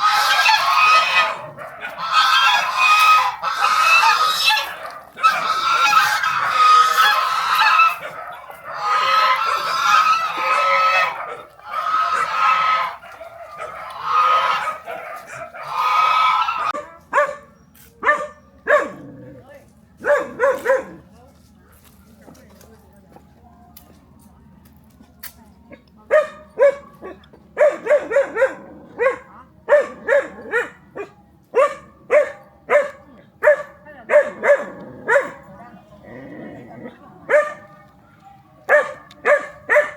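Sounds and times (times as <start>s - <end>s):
geese honking: 0.0s - 16.8s
dog barking: 1.0s - 2.7s, 3.9s - 19.2s, 20.0s - 21.1s, 26.1s - 35.6s, 37.2s - 37.9s, 38.7s - 39.9s.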